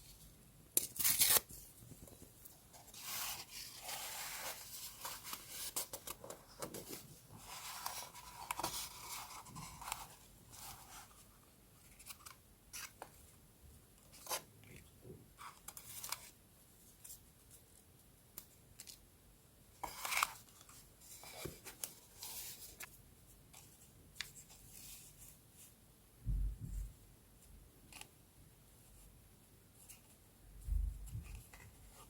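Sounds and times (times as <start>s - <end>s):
soft low thumps: 26.2s - 27.0s, 30.6s - 31.4s.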